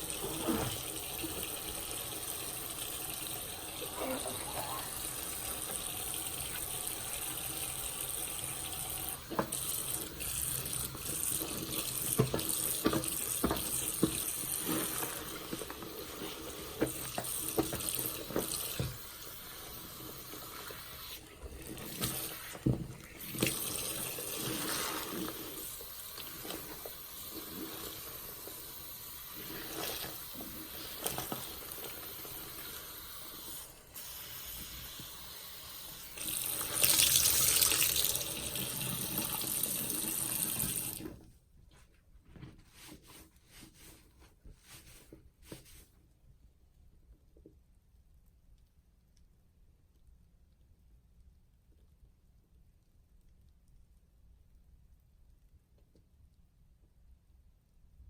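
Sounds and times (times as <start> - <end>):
tap running into sink: 9.0 - 15.9
wet sponge squelches: 19.4 - 35.3, 41.7 - 46.0.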